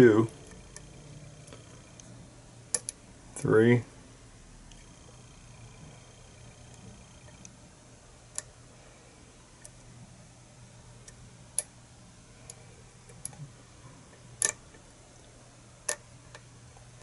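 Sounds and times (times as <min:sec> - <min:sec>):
lock pick clicking lock pins: 0:14.4 - 0:14.6.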